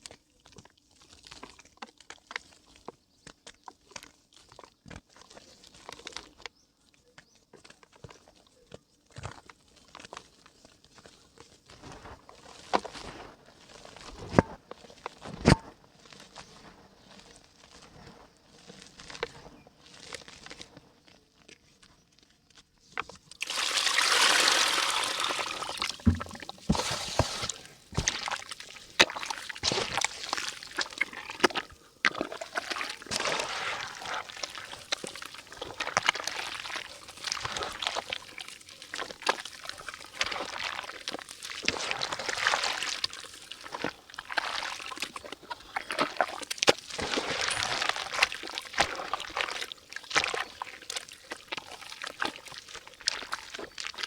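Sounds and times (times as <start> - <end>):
mud crackling and crumbling: 23.0 - 54.0
water pouring hiss: 23.4 - 28.1.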